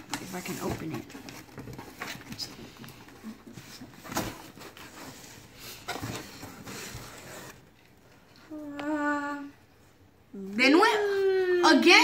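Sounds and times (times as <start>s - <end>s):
cardboard box rustling and scraping: 0.2s - 7.7s.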